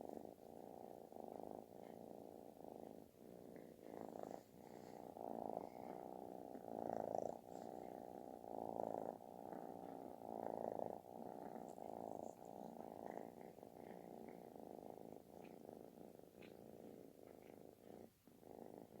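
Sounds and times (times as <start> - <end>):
kitten purring: 0.0 - 19.0.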